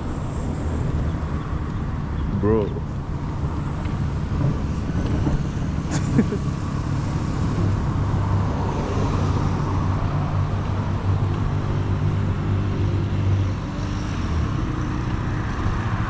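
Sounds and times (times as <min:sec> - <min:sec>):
road and wind noise: 0:00.0 - 0:16.0
vehicle engine running: 0:00.0 - 0:16.0.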